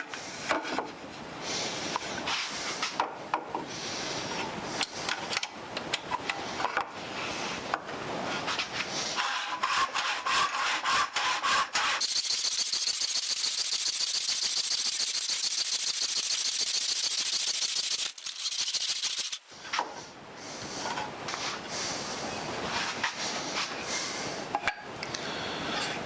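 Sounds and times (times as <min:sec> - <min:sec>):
hand saw cutting wood: 0:09.2 - 0:19.5.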